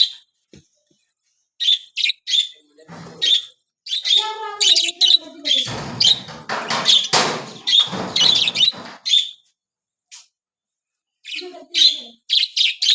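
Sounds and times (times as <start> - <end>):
budgies chirping and chattering: 1.6 - 9.4, 11.2 - 12.9.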